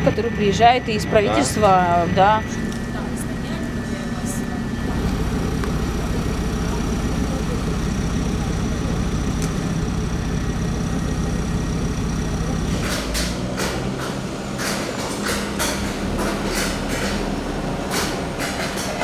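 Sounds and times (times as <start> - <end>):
heavy engine idling: 0.0 - 19.0.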